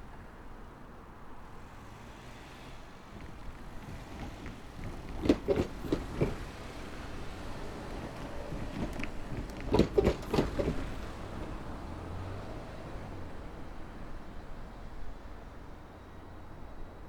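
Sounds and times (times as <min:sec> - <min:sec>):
tyres rumbling: 0:01.4 - 0:14.3
tyres thudding over rails: 0:03.0 - 0:12.6.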